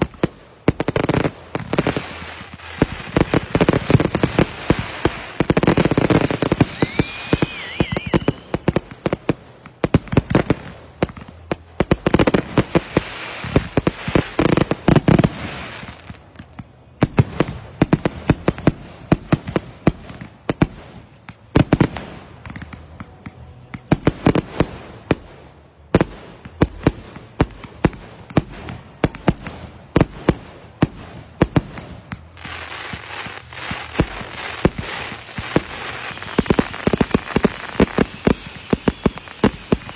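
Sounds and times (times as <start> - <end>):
fireworks banging and popping: 0.0 - 39.9
fireworks crackling: 0.0 - 39.9
wavering whistle: 6.6 - 8.6.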